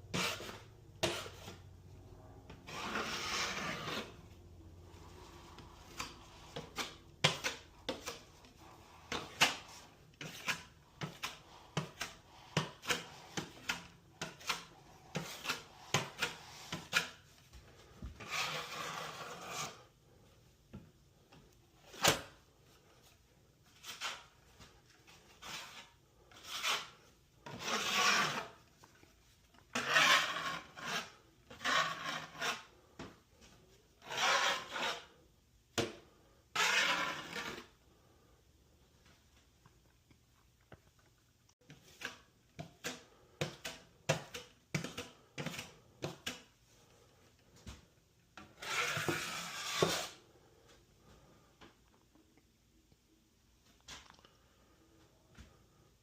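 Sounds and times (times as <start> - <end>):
rasping scrapes on wall board: 0.1 - 1.6, 2.5 - 4.4, 18.2 - 19.9, 25.4 - 28.6, 29.7 - 32.8, 34.0 - 35.2, 36.5 - 37.8, 48.6 - 50.2.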